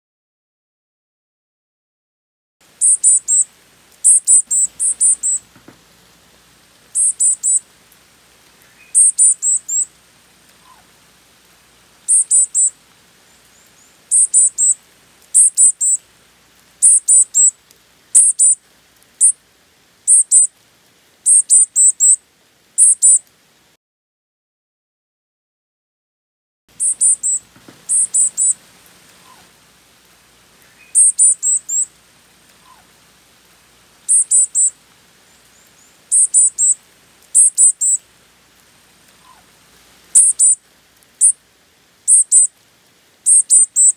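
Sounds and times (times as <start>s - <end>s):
bird calling high thin notes: 2.8s - 5.4s, 7.0s - 7.6s, 8.7s - 9.9s, 12.1s - 12.7s, 15.4s - 16.0s, 16.8s - 17.5s, 26.8s - 28.6s, 30.8s - 31.9s, 36.1s - 36.8s, 40.2s - 40.6s.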